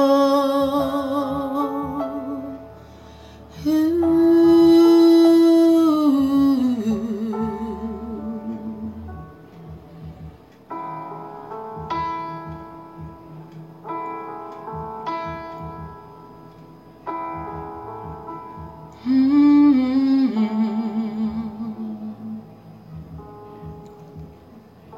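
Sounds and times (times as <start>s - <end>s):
person singing long wordless note: 0.0s - 9.8s, 18.9s - 23.2s.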